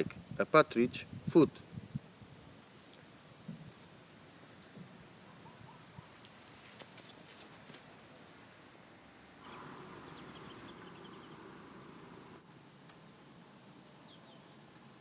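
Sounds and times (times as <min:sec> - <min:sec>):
bird chirps: 0:09.2 - 0:12.4
steady low hum: 0:09.4 - 0:12.6.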